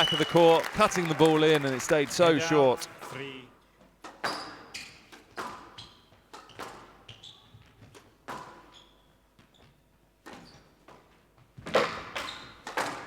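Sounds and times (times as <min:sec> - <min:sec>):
court shoes squeaking: 0:04.0 - 0:13.0.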